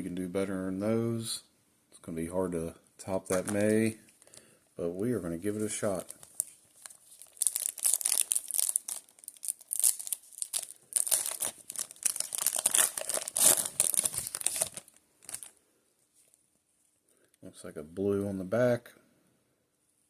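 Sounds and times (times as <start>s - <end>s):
foil wrapper tearing and crinkling: 5.7s - 15.5s.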